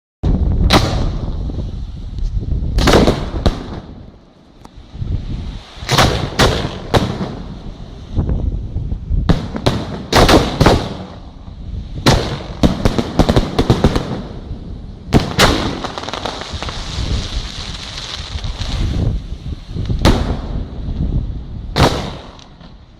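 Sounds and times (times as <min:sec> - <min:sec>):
firework crackling hiss: 0:00.5 - 0:22.9
firework shells bursting: 0:05.7 - 0:07.5.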